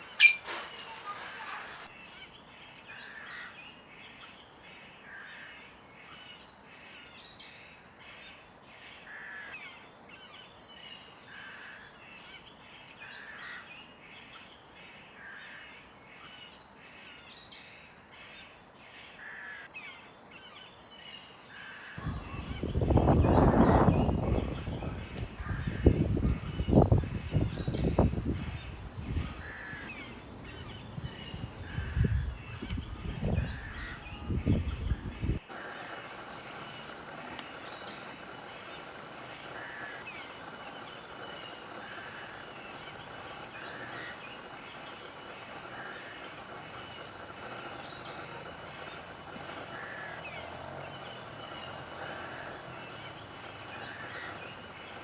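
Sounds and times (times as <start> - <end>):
small birds chirping: 0.0 - 0.5, 22.0 - 55.0
faint hiss: 22.0 - 55.0
low rumbles: 22.0 - 55.0.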